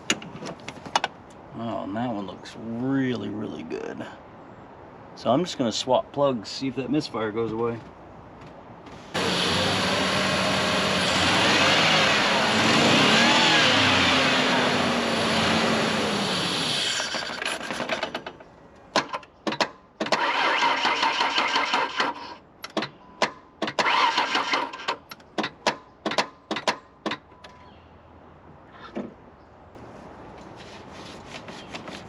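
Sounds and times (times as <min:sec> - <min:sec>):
engine running: 0:09.2 - 0:17.4
starter motor whirring: 0:09.2 - 0:17.5, 0:20.1 - 0:22.4, 0:23.7 - 0:25.0.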